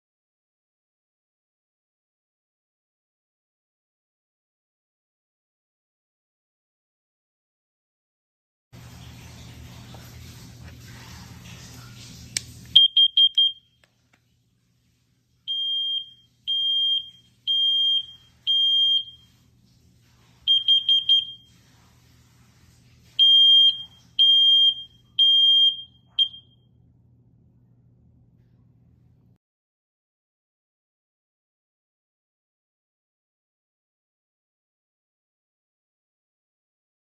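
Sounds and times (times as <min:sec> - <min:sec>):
smoke alarm beeping: 0:12.8 - 0:13.8, 0:15.5 - 0:19.3, 0:20.5 - 0:21.5, 0:23.2 - 0:26.6.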